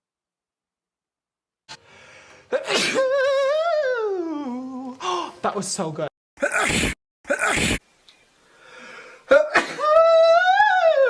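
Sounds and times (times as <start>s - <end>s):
high-pitched vocal cry: 6.4s - 7.8s
person sneezing: 6.4s - 7.8s.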